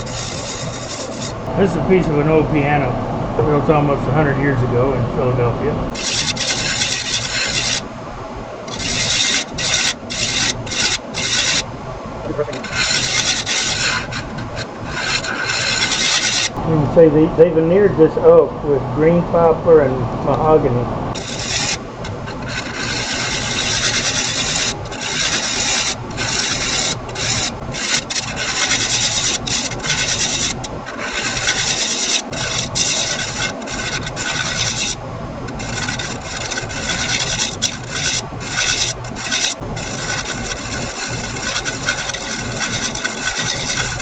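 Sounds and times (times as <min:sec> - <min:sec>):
lathe tool rasping on wood: 0:00.0 - 0:01.6, 0:05.9 - 0:08.0, 0:08.6 - 0:16.6, 0:21.1 - 0:44.0.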